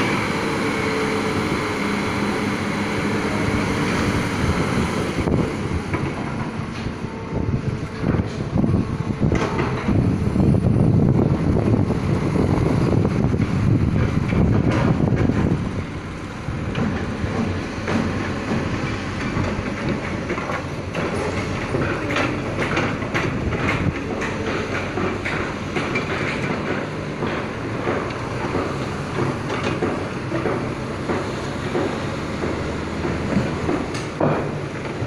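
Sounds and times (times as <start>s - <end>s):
excavator engine rumble: 0.0s - 35.0s
metallic clanking and knocking: 5.2s - 35.0s.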